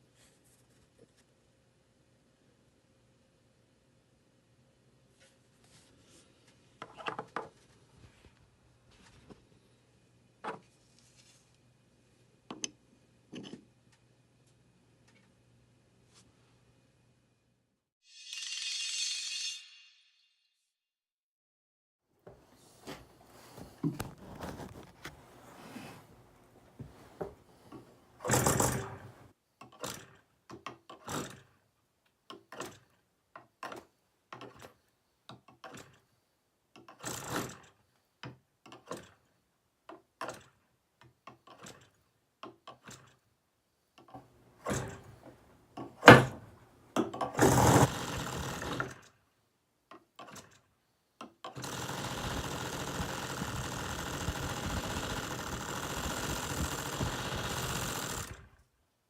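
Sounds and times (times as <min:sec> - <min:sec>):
model engine buzzing: 0:51.6 - 0:58.5.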